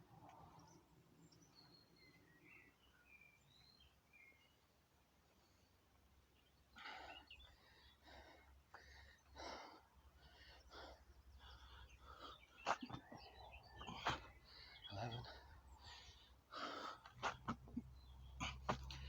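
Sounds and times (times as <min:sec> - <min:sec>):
man breathing hard: 0:06.8 - 0:19.0.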